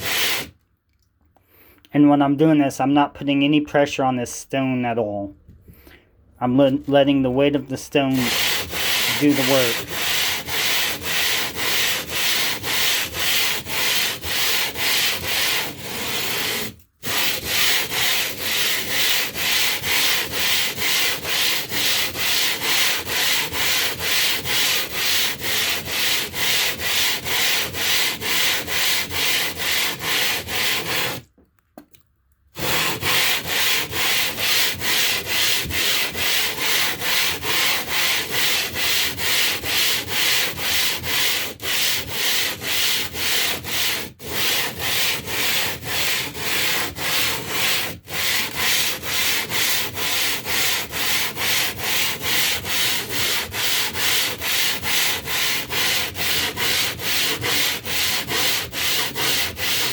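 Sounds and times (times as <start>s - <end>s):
stone grinding on glass: 8.1s - 31.2s.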